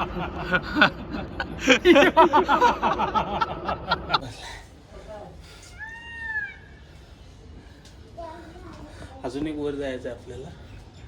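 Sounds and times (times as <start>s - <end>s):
people laughing: 0.0s - 4.4s.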